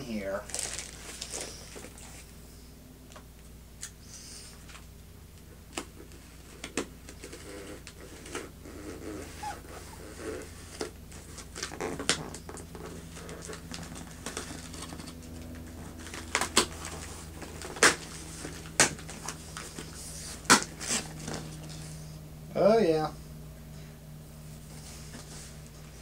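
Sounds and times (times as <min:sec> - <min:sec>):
toy packaging rustling: 0:00.4 - 0:02.0
packaging crackles and clicks: 0:00.5 - 0:01.9, 0:11.4 - 0:19.8.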